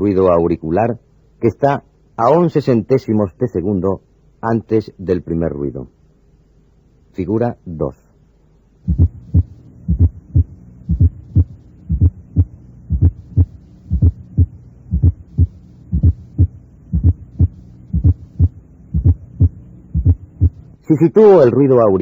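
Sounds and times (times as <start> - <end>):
steady low hum: 0.0 - 22.0
heartbeat: 8.8 - 20.7.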